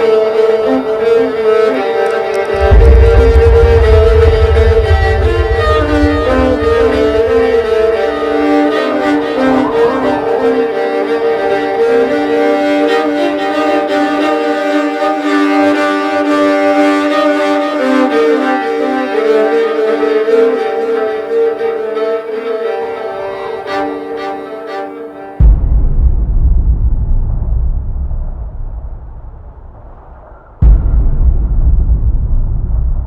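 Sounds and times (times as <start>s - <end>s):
violin bowed notes: 0.0s - 25.5s
deep low rumble: 2.4s - 12.8s, 25.4s - 33.0s.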